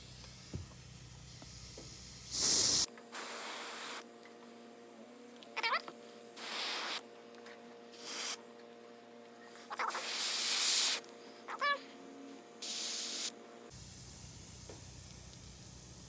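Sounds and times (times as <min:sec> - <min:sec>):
airbrush spraying hiss: 0:00.0 - 0:04.0, 0:06.3 - 0:07.0, 0:07.9 - 0:08.4, 0:09.8 - 0:11.1, 0:12.6 - 0:16.0.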